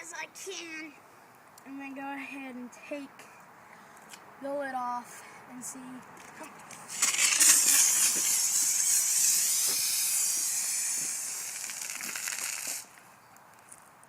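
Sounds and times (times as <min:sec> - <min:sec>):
soda bottle spraying fizz: 0:06.9 - 0:12.9.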